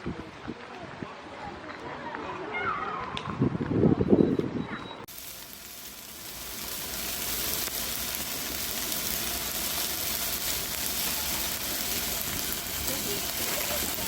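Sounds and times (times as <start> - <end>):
food sizzling on hot pan: 5.1 - 14.0.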